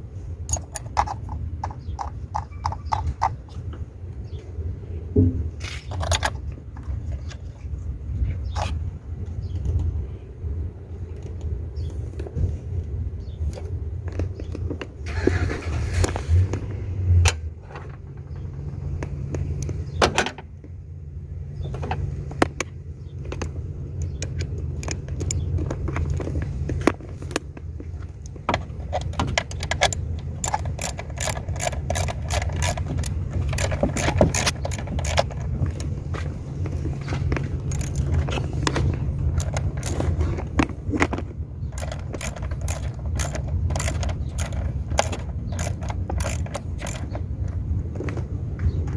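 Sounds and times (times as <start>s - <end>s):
steady low rumble: 0.0s - 48.9s
metal tools clicking and scraping: 0.4s - 3.7s, 5.6s - 7.7s, 28.2s - 36.0s, 36.6s - 47.7s.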